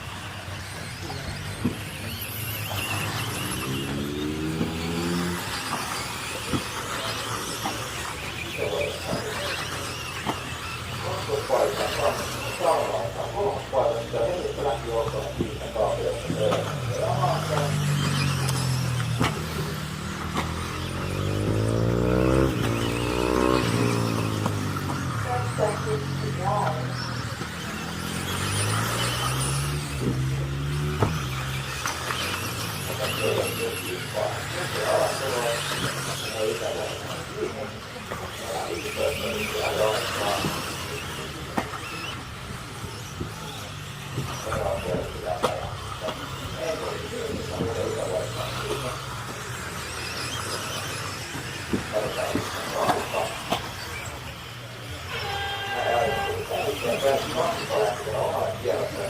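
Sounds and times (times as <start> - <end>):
rc car motor whine: 0.0 - 59.0.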